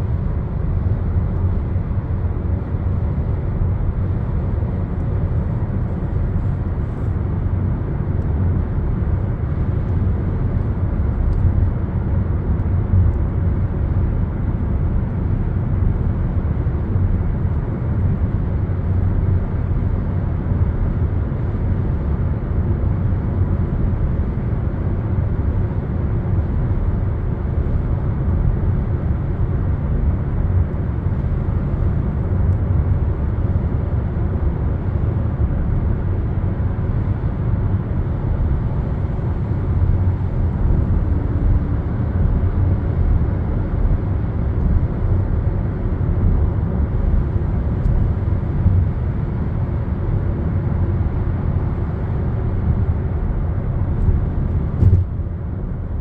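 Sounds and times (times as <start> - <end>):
vehicle rumble: 0.0 - 56.0.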